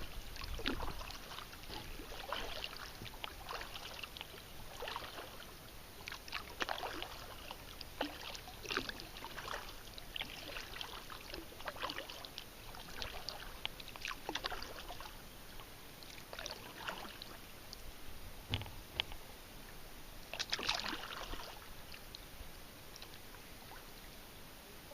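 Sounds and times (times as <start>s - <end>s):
paddle splashing in water: 0.0s - 17.6s, 20.2s - 22.1s.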